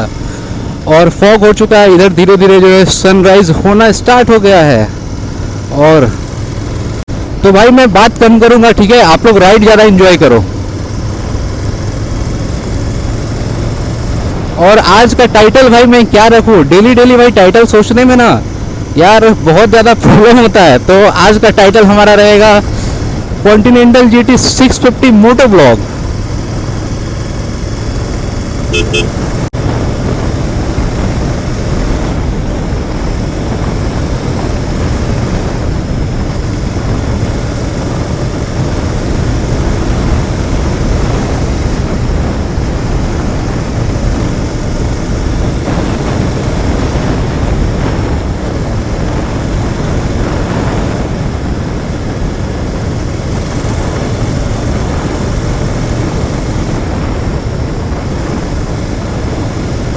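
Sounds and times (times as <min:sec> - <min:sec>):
motorcycle engine cruising: 0:00.0 - 0:59.9
short horn toot: 0:28.7 - 0:29.2.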